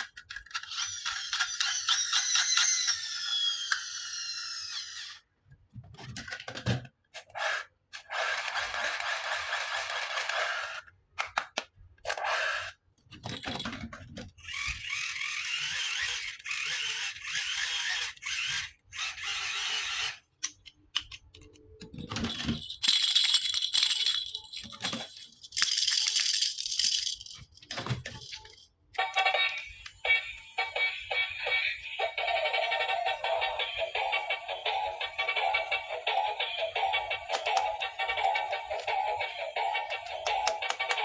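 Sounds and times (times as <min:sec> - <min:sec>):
plastic toy pieces rattling: 0:00.0 - 0:05.2, 0:13.2 - 0:28.8
electronic toy tune: 0:00.8 - 0:05.2, 0:29.0 - 0:41.0.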